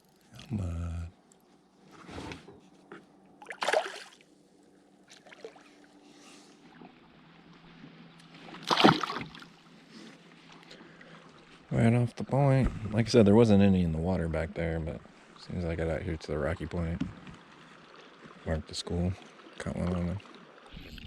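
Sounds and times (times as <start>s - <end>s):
water splashing: 3.4s - 4.2s, 5.1s - 5.9s, 8.4s - 9.6s.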